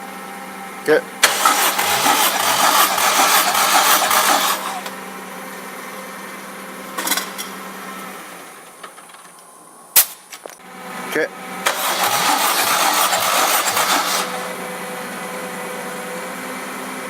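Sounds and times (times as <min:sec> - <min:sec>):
engine cranking on starter: 0:01.2 - 0:05.0, 0:11.6 - 0:15.0.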